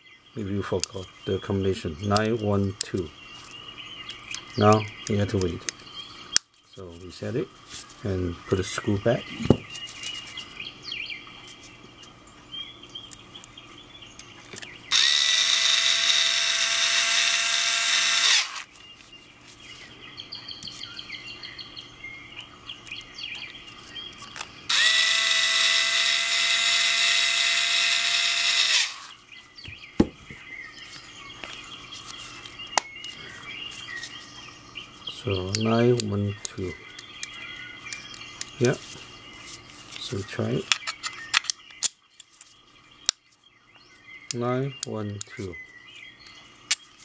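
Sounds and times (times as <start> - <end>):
electric screwdriver whining: 14.9 - 18.7, 24.7 - 29.1.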